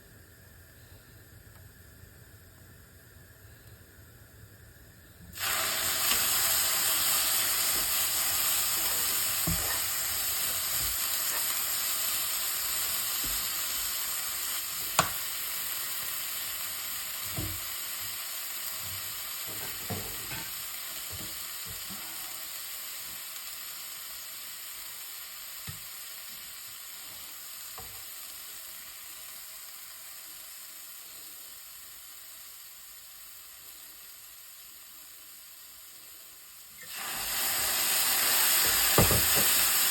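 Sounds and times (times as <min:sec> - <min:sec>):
food sizzling in a hot pan: 0:05.3 - 0:39.9
knocks of stirring in a pan: 0:05.4 - 0:14.1, 0:14.7 - 0:15.6, 0:17.2 - 0:22.3.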